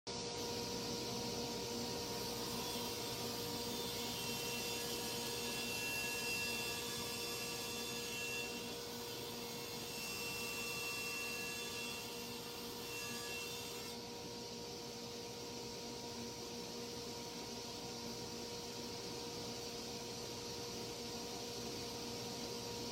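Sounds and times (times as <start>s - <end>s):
table saw cutting wood: 2.1s - 14.1s.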